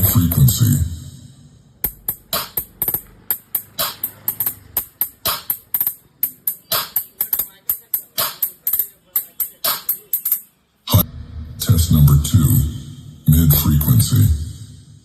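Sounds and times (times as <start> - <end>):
sharp tambourine-like hits: 1.8 - 10.4.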